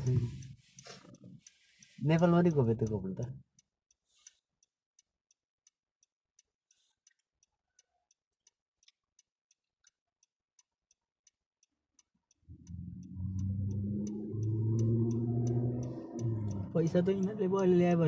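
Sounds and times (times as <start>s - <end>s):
car turn signal ticking: 0.0s - 4.4s, 10.6s - 18.0s
low humming sound: 12.5s - 18.0s.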